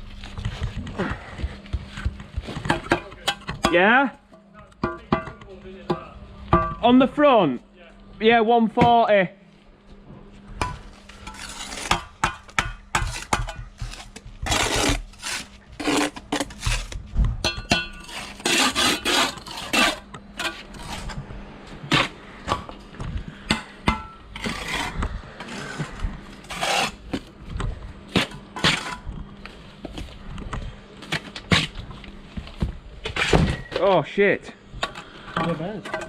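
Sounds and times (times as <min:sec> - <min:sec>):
trowel scraping mortar: 0:11.1 - 0:17.0, 0:17.9 - 0:21.2, 0:24.3 - 0:27.2.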